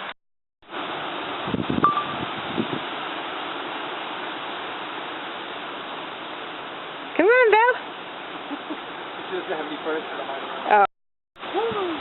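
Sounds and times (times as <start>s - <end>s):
heavy rain: 0.0s - 12.0s
wind: 0.0s - 12.0s
brief high ring: 1.8s - 2.3s.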